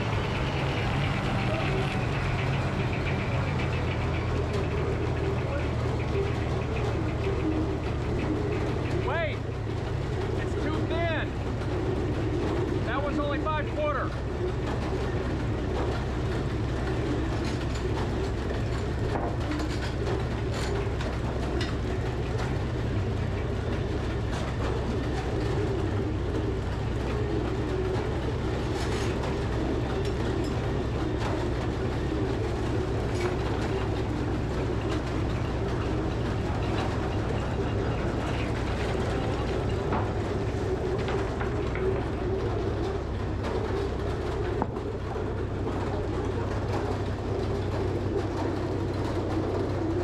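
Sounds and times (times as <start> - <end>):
machinery clicks and knocks: 0.0 - 50.0
sawmill machinery drone: 0.0 - 50.0.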